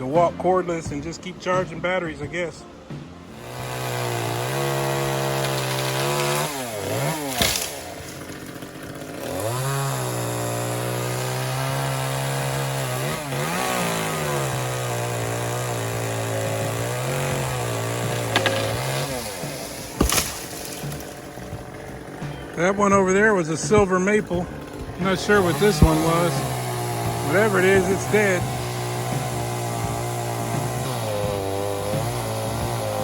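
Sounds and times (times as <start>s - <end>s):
cordless chainsaw whining: 3.3s - 33.0s
sharp cracks: 5.4s - 9.6s, 15.7s - 28.6s.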